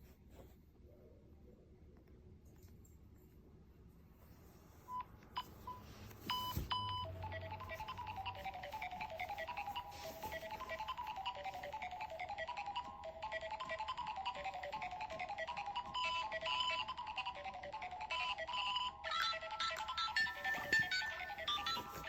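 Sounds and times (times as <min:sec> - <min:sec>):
short electronic beeps: 0:04.9 - 0:07.1
electronic ringtone sequence: 0:05.4 - 0:22.0.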